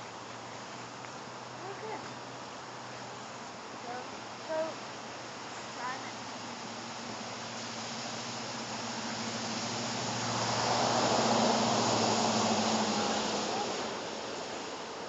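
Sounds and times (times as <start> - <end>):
engine running: 0.0 - 14.8
rushing noise: 5.0 - 15.0.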